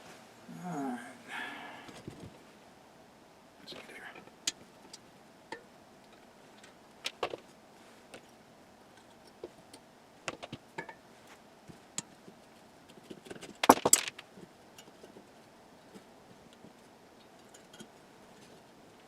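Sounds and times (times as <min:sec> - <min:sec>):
metal parts clicking and tapping: 0:13.3 - 0:14.2
metal parts clinking and rattling: 0:13.6 - 0:14.2.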